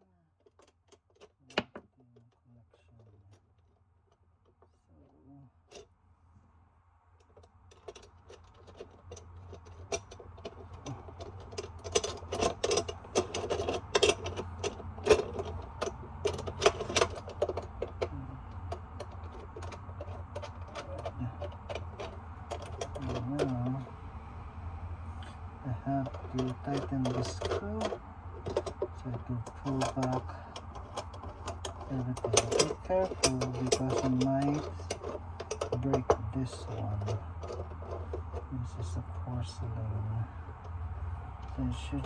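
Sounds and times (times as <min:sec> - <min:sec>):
steady low hum: 0:00.0 - 0:42.0
small metal parts clinking: 0:07.2 - 0:23.9, 0:26.0 - 0:38.8.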